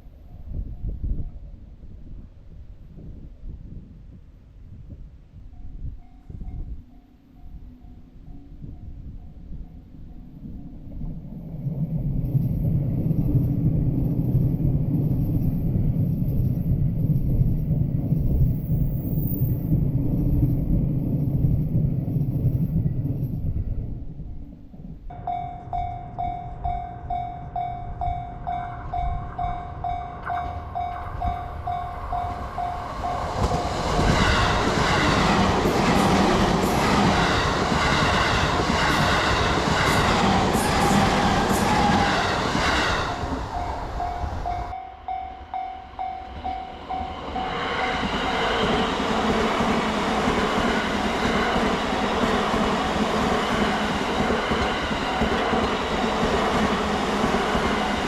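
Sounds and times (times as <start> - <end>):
train wheel clatter: 30.2 - 44.8, 46.4 - 58.0
level crossing warning bell: 43.6 - 47.6.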